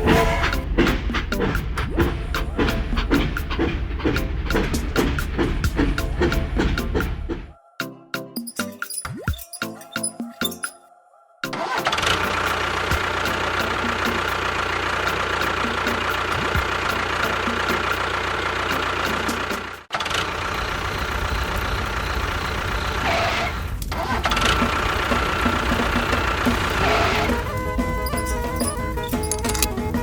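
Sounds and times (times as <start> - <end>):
motor ticking: 0.0 - 7.4, 11.9 - 19.8, 24.4 - 30.0.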